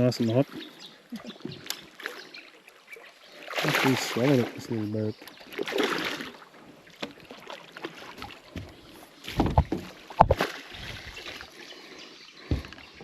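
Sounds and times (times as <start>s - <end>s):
knocks and thumps against boat hull: 8.5s - 10.4s, 12.4s - 12.8s.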